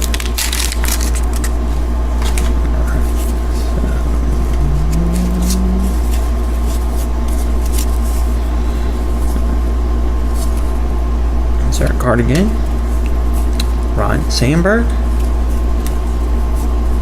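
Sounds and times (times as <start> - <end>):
wax paper pack crinkling: 0.0 - 1.5
low electrical hum: 0.0 - 17.0.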